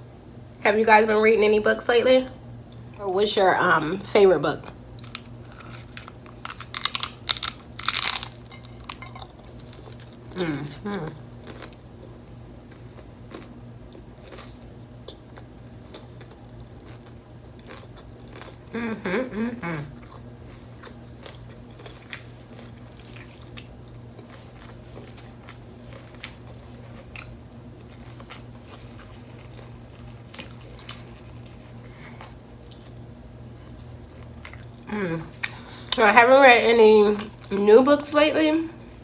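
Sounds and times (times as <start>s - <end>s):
chewing crunchy food: 4.7s - 19.0s, 19.8s - 36.0s.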